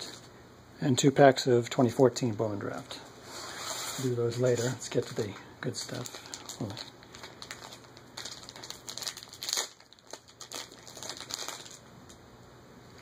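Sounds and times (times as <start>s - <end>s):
card packaging crinkling: 4.0s - 12.2s.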